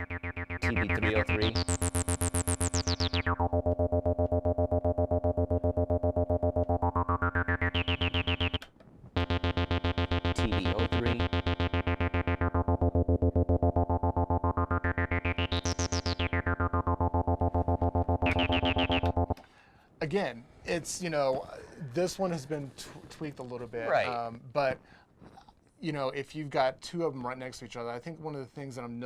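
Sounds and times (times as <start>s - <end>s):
synth acid bassline: 0.0s - 19.4s.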